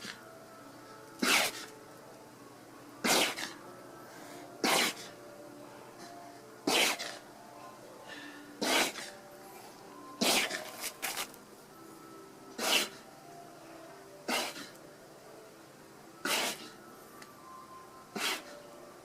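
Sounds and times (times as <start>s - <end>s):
alpaca sneezing: 1.2s - 1.7s, 3.0s - 3.6s, 4.6s - 5.2s, 6.6s - 7.2s, 8.6s - 9.2s, 10.2s - 10.7s, 12.6s - 13.0s, 14.2s - 14.8s, 16.2s - 16.8s, 18.2s - 18.5s.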